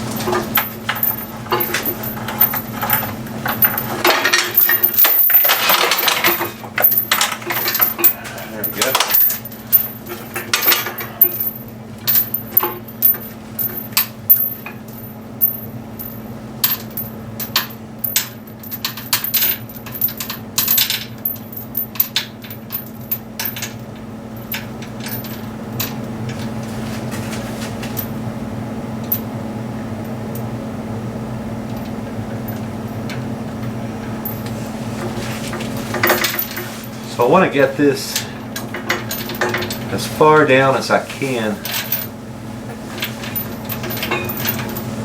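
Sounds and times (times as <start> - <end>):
steel chain clinking and rattling: 0.0 - 23.8, 24.4 - 26.4, 34.1 - 40.5, 41.2 - 42.1, 42.9 - 44.9
steady hum: 0.0 - 45.0.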